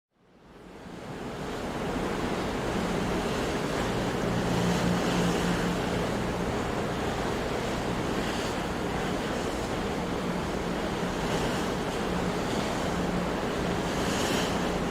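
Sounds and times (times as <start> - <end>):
ocean waves breaking: 0.6 - 14.9.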